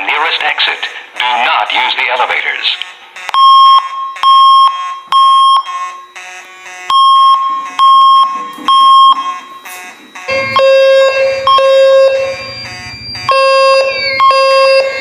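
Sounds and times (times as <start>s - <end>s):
fire alarm beeps: 3.2s - 15.0s.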